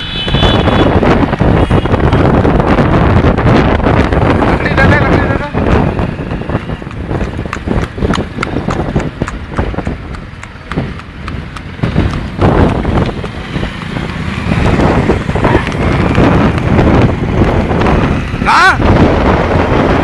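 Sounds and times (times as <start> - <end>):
loud rushing noise: 0.0 - 20.0
horse hooves clip-clopping: 5.6 - 18.0.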